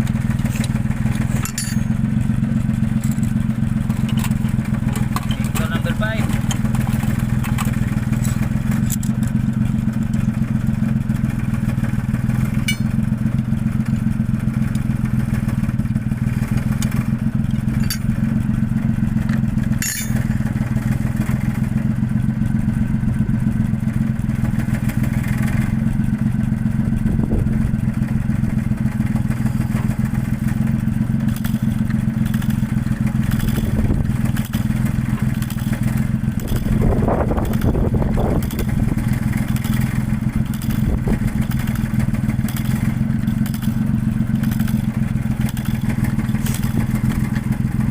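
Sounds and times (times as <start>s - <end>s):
diesel truck engine idling: 0.0s - 47.9s.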